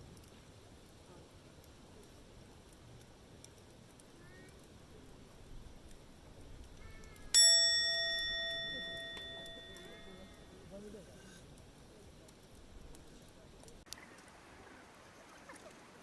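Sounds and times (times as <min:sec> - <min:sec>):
faint ticking: 0:00.0 - 0:14.0
metallic strike ringing like bell: 0:07.3 - 0:10.6.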